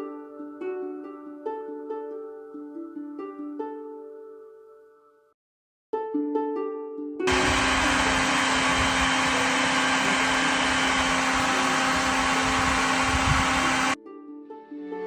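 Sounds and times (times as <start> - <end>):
rushing air: 7.3 - 14.0
vacuum motor whine: 7.3 - 14.0.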